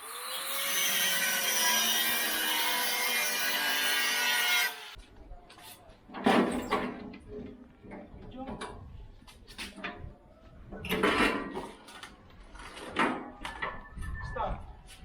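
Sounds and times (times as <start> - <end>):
power tool cutting steel: 0.0 - 5.0.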